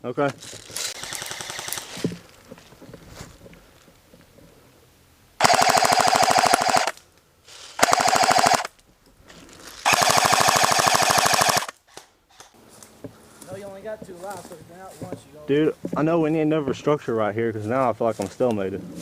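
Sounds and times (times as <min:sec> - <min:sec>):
airsoft gun full-auto bursts: 0:01.0 - 0:01.9, 0:05.4 - 0:07.0, 0:07.8 - 0:08.7, 0:09.8 - 0:11.8.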